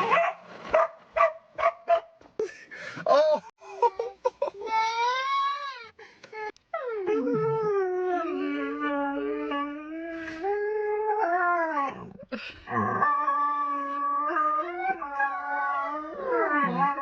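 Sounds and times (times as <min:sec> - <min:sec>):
dog howling: 0:06.8 - 0:10.0, 0:13.0 - 0:17.0.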